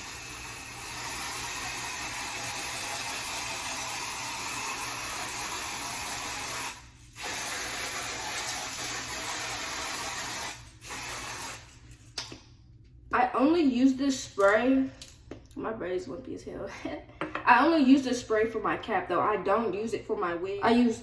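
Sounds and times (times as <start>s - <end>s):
aerosol can hissing: 0.0s - 11.7s.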